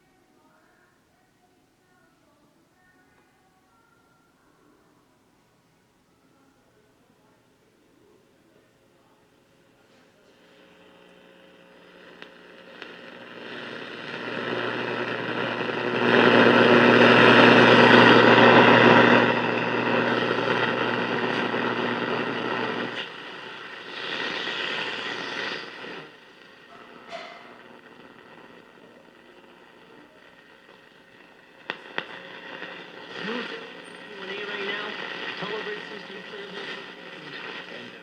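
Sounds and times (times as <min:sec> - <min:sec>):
radio static and hum: 0:07.8 - 0:38.0.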